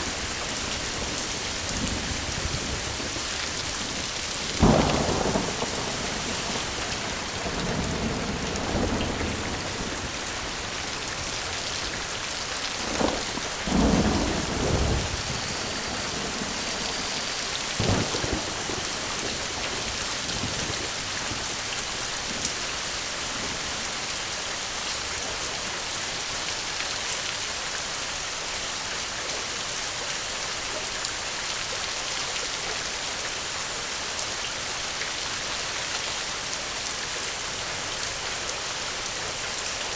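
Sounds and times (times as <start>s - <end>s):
steady rain: 0.0s - 39.9s
thunder rumble: 0.1s - 21.5s
thunder crack: 4.6s - 10.1s, 12.9s - 20.9s.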